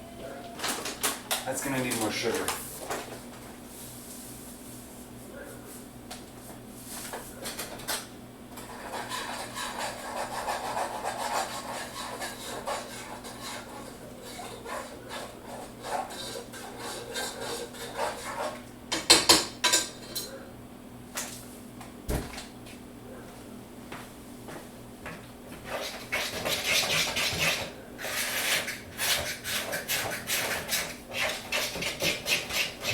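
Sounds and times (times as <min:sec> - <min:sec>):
utensil scraping a mixing bowl: 0:08.6 - 0:18.7, 0:25.6 - 0:32.9.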